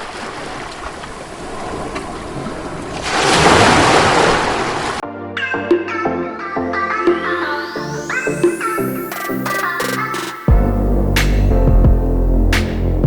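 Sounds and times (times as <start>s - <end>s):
ocean surf rushing: 0.0s - 5.0s
electronic music with synth glide: 5.0s - 13.0s.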